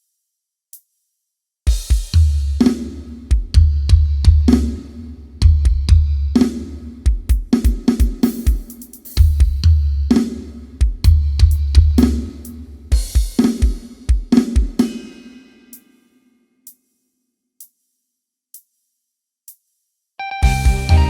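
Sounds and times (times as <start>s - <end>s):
drum groove: 1.7s - 16.9s, 17.6s - 19.8s, 20.4s - 21.0s
deep bass notes: 20.4s - 21.0s.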